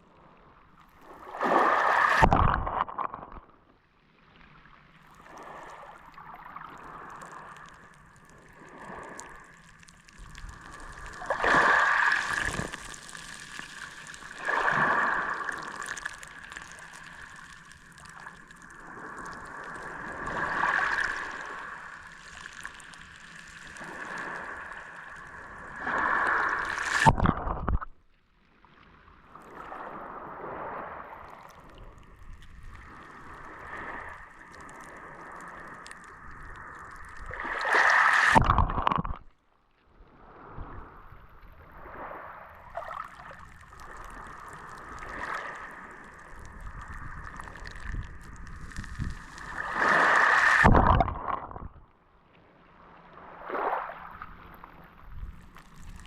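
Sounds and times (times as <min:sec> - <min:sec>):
waves washing onto a beach: 0:01.0 - 0:03.4, 0:05.2 - 0:22.9, 0:32.8 - 0:39.2, 0:41.8 - 0:51.5.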